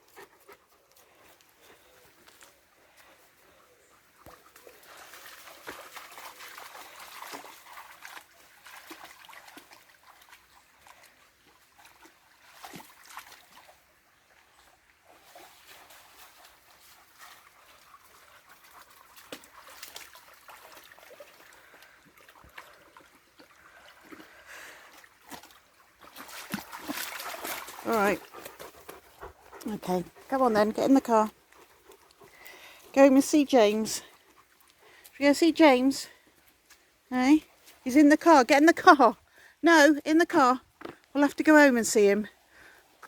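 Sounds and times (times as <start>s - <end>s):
river water trickling: 0.7s - 39.6s
light splashes: 18.6s - 28.6s.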